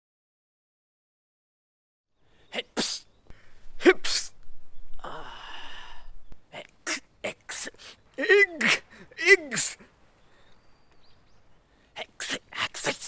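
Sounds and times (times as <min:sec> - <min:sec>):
person sneezing: 0:02.6 - 0:03.1, 0:03.8 - 0:04.4, 0:06.9 - 0:09.9, 0:12.0 - 0:13.0.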